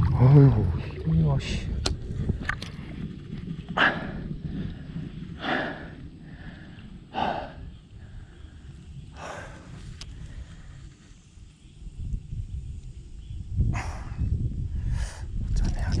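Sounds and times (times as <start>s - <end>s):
steady low rumble: 0.0s - 16.0s
person breathing heavily: 3.8s - 10.9s.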